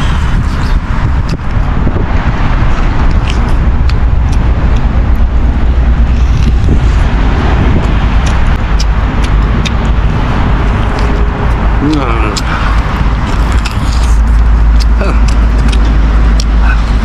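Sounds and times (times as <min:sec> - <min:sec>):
gusting wind on microphone: 0:00.0 - 0:17.0
sharp ticks: 0:03.0 - 0:05.3, 0:07.8 - 0:10.0.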